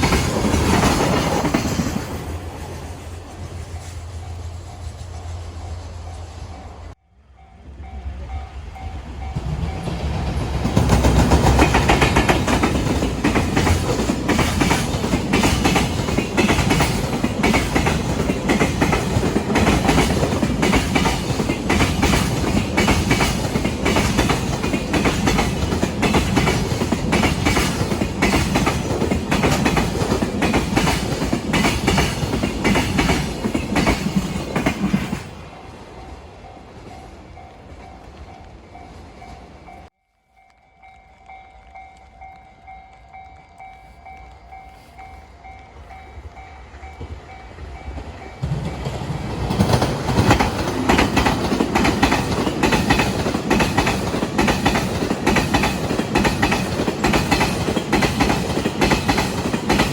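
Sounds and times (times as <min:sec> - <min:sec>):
train wheels clattering over rail joints: 0:00.0 - 0:02.8, 0:09.3 - 0:35.4, 0:47.9 - 0:59.9.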